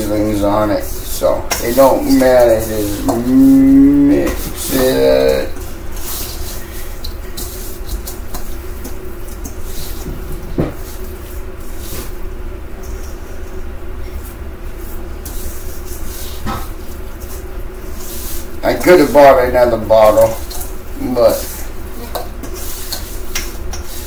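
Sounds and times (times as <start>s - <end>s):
steady low hum: 0.0s - 24.0s
chicken rubbed by hand: 0.3s - 10.1s, 14.2s - 21.8s, 22.4s - 24.0s.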